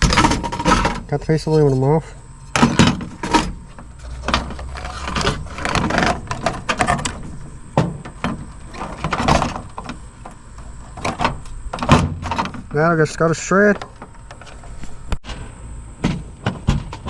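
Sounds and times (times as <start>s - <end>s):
cassette deck parts clanking: 0.0s - 15.2s.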